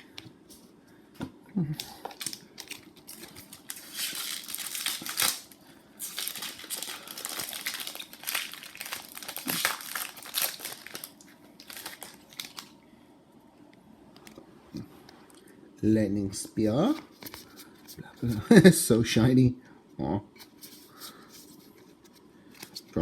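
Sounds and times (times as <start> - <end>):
foil wrapper crinkling: 1.8 - 12.8.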